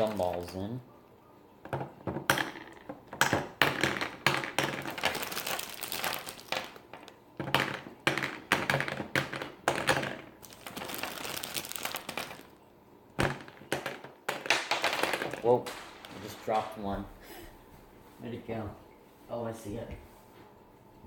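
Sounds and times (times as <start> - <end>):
packaging crinkling: 0.0 - 0.6, 4.6 - 7.2, 10.4 - 12.7
gumballs clattering on plastic: 0.0 - 0.7, 1.6 - 17.0.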